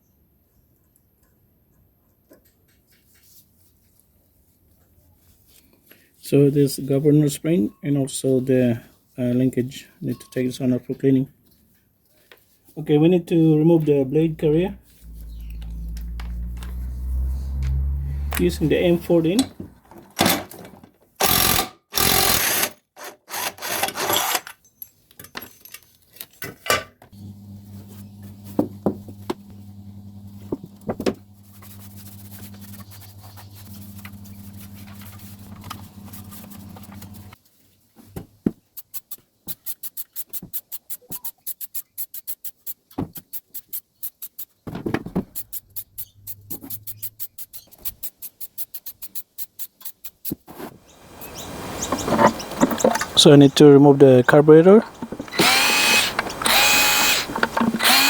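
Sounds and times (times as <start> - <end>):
low hum: 14.1 - 19.3, 27.2 - 37.4.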